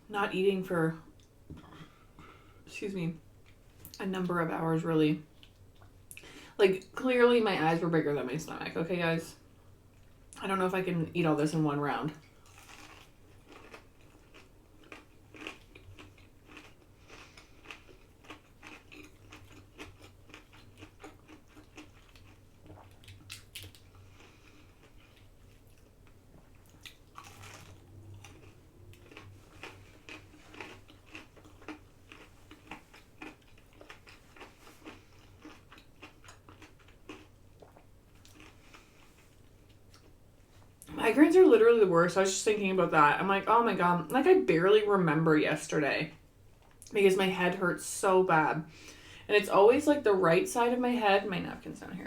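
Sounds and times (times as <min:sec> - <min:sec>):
person chewing food: 0:12.2 - 0:40.2.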